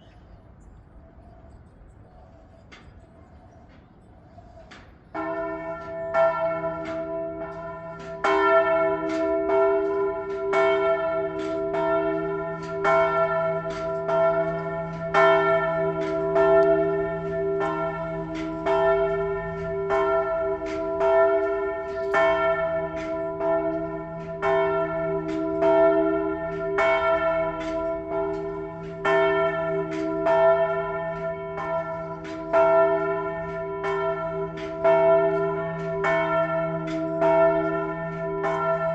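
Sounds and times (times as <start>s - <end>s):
church bells ringing: 3.7s - 38.9s.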